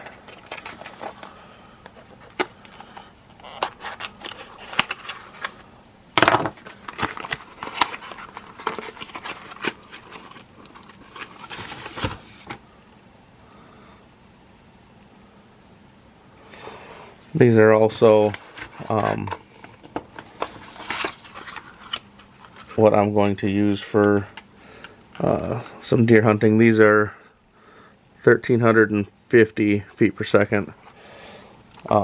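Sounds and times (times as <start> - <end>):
cardboard box opening: 6.4 - 10.0.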